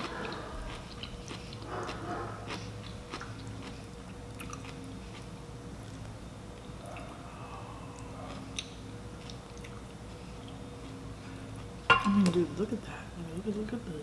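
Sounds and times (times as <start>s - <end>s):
chewing and biting: 0.0s - 6.1s
small clicks and mouth sounds: 0.0s - 7.2s, 7.9s - 9.8s.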